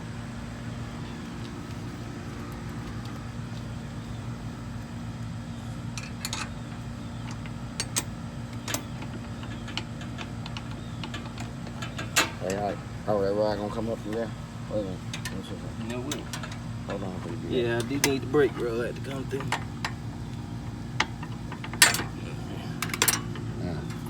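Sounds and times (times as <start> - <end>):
steady low hum: 0.0 - 24.0
metal tools clicking and clinking: 5.9 - 12.8, 15.1 - 20.0, 21.0 - 22.2, 22.8 - 24.0.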